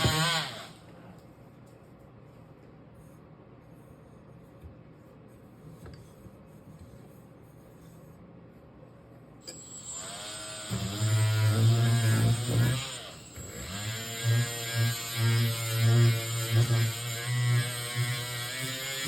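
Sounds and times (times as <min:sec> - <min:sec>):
power tool grinding metal: 0:00.0 - 0:00.8, 0:09.5 - 0:19.0.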